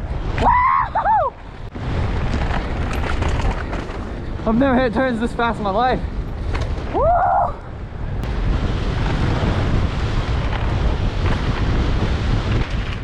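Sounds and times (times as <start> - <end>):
wind rushing over microphone: 0.0 - 13.0
bike ride clatter: 1.6 - 7.0, 8.2 - 13.0.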